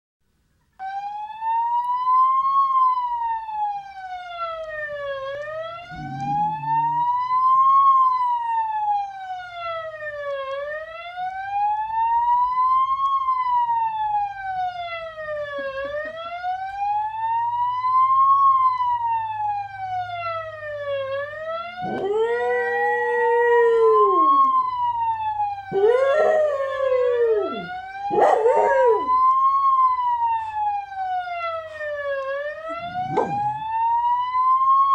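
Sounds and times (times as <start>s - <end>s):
ambulance siren wailing: 0.8s - 34.9s
dog howling: 5.9s - 7.2s, 21.8s - 24.5s, 25.7s - 29.1s, 32.8s - 33.7s.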